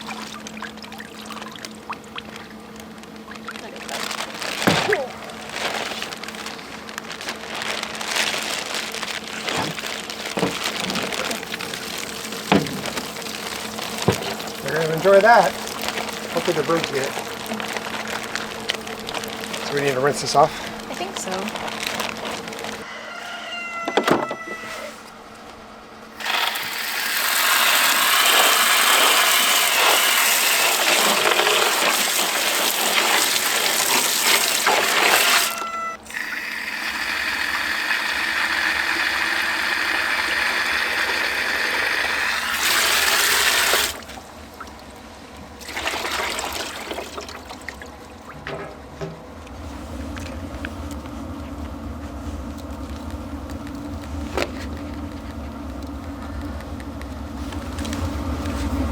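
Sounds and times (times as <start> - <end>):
water splashing from tap: 26.2 - 44.7, 45.6 - 47.8.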